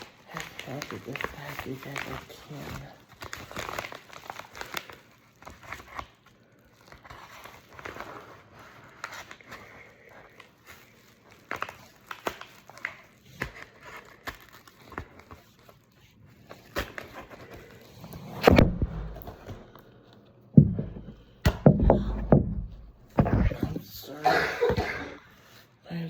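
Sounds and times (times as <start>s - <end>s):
package clicks and rustles: 0.0s - 18.4s
loud thump: 18.5s - 19.3s, 20.6s - 23.8s.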